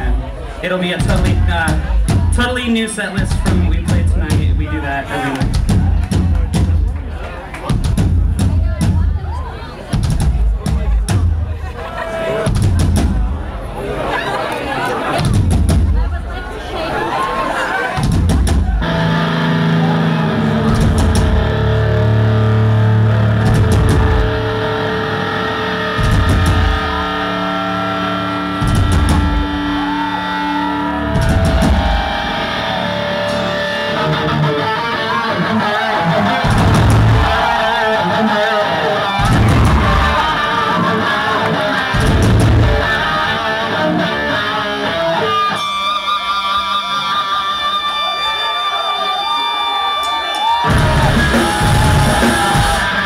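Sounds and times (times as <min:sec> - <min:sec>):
live rock band playing: 0:00.0 - 0:13.5, 0:17.9 - 0:48.8, 0:50.4 - 0:53.0
bass guitar low notes: 0:00.0 - 0:13.8, 0:18.0 - 0:38.2, 0:39.0 - 0:45.2, 0:50.6 - 0:53.0
heavy low accents: 0:18.0 - 0:34.7
distorted electric guitar: 0:18.0 - 0:48.4, 0:50.6 - 0:53.0.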